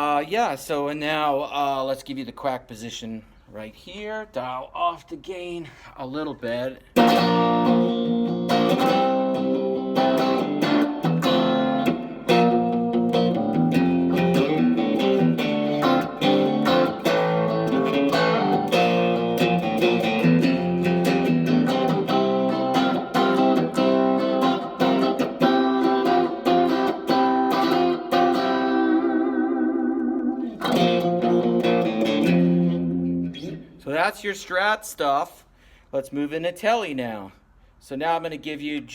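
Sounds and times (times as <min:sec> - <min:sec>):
electric guitar playing: 0:07.0 - 0:33.8.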